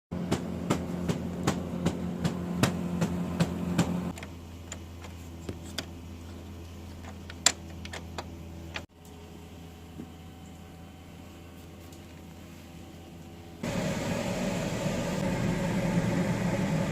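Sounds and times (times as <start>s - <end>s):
laser printer running: 13.6s - 16.9s.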